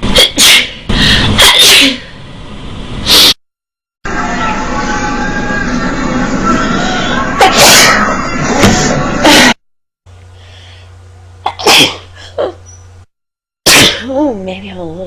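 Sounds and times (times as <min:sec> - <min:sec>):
people sneezing: 0:01.4 - 0:02.0, 0:07.4 - 0:08.1, 0:11.5 - 0:12.6, 0:13.7 - 0:14.1.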